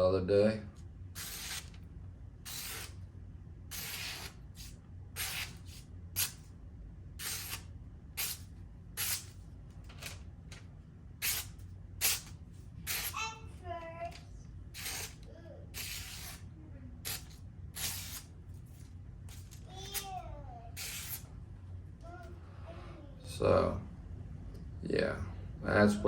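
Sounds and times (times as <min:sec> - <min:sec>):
knife slicing paper: 0:01.2 - 0:01.8, 0:02.5 - 0:03.0, 0:03.7 - 0:06.4, 0:07.2 - 0:08.4, 0:14.8 - 0:15.2, 0:15.8 - 0:16.5.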